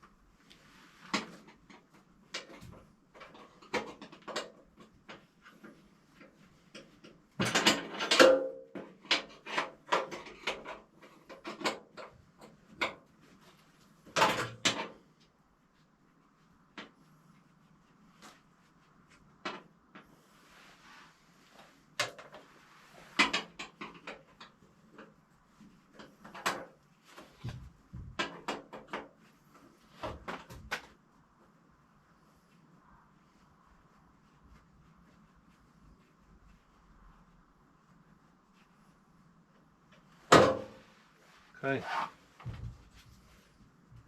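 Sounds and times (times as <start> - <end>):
tools and metal parts clattering: 7.4 - 8.5.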